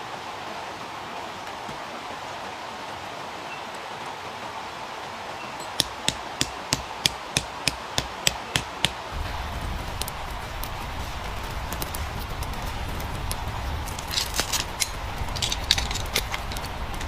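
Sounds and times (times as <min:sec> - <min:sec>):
steady hiss: 0:00.0 - 0:17.0
low rumble: 0:09.2 - 0:17.0.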